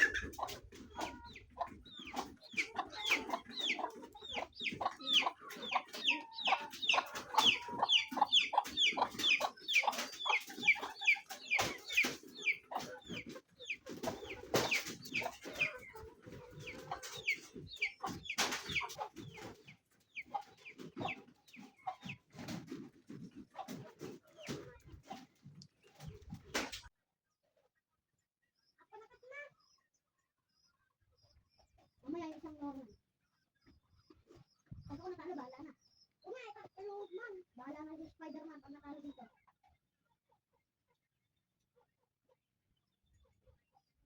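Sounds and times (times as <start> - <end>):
chickens clucking: 0.0 - 26.9, 33.6 - 41.0.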